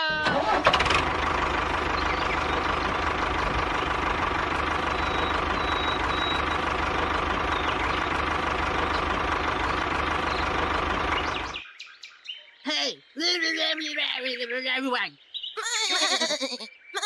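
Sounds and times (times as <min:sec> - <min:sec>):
engine running with low pulse: 0:00.0 - 0:11.6.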